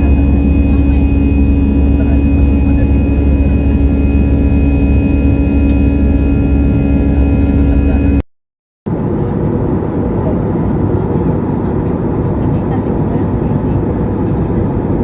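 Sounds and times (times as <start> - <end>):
jet engines droning: 0.0 - 8.2, 8.9 - 15.0
low hum: 0.0 - 8.2.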